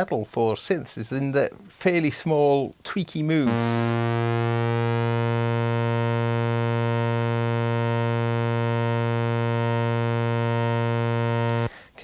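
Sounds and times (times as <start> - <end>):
sustained synthesizer note with flanger: 3.5 - 11.7.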